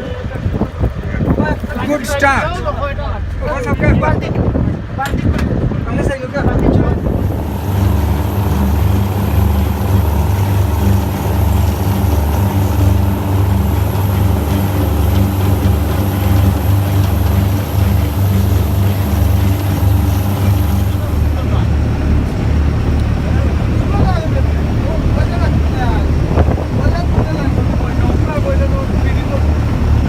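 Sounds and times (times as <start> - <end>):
engine running steadily: 0.0 - 30.0
faint high whine: 7.0 - 26.1.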